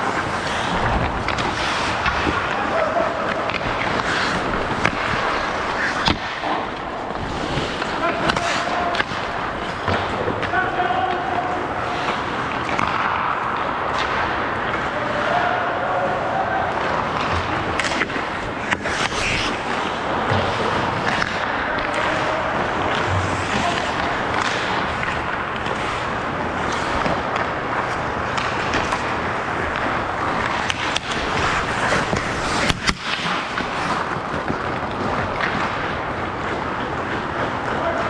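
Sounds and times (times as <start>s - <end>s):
skates scraping on ice: 0.0s - 15.0s, 16.2s - 38.0s
clacks of sticks and puck: 0.0s - 15.6s, 16.5s - 38.0s.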